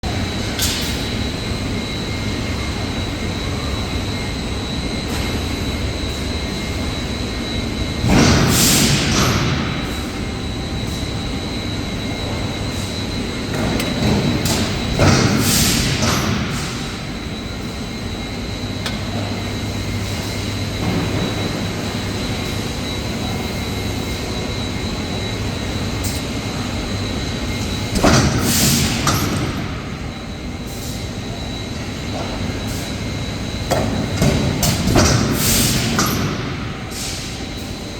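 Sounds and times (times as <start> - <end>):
machinery high whine: 0.0 - 37.9.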